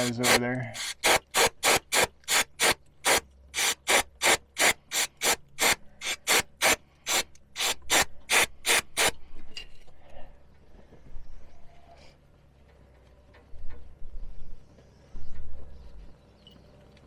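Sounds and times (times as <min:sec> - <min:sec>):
brush scrubbing metal: 0:00.0 - 0:09.1.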